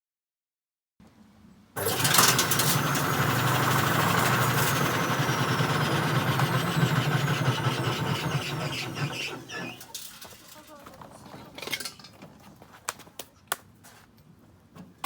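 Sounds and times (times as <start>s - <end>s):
washing machine motor hum: 1.8s - 10.2s.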